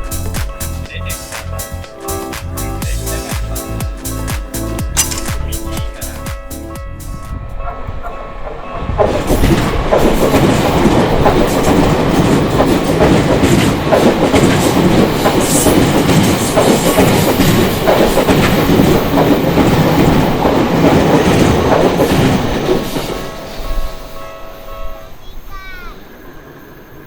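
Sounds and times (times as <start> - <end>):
train wheels rumbling on rails: 0.0 - 27.0
wheels clicking over rail joints: 7.8 - 23.4.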